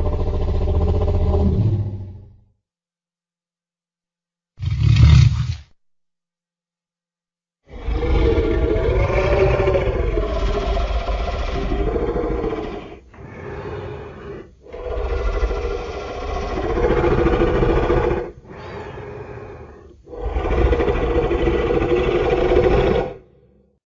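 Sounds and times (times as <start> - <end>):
monster roaring: 7.7 - 23.4.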